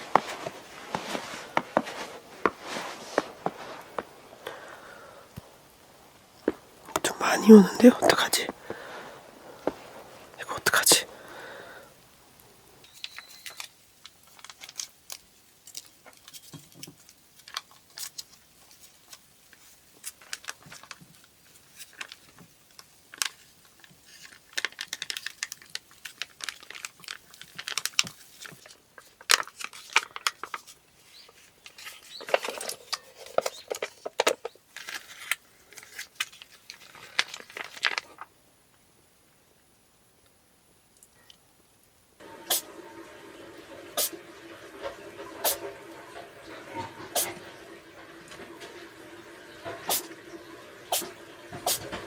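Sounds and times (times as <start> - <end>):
crinkling and crackling: 0.0 - 7.1, 7.8 - 38.3.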